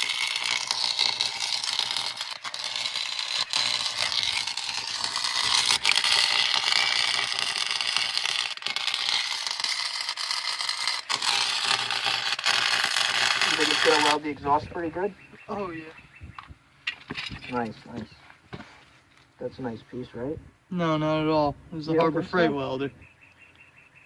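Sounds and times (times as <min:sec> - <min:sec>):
welding arc crackling hiss: 0:00.0 - 0:14.9.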